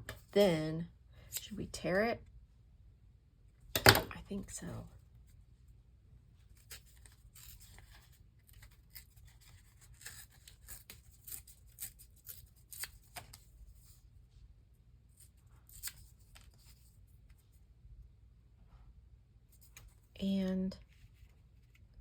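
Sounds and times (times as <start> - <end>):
cardstock tearing: 6.6 - 13.4.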